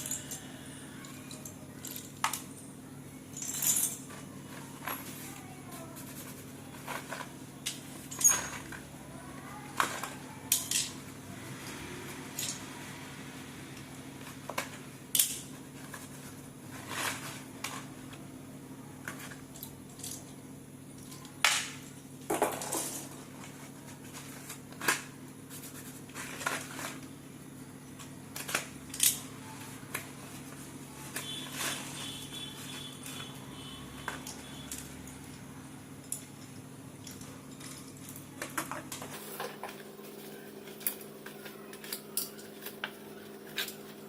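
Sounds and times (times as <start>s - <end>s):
low electrical hum: 0.0s - 44.0s.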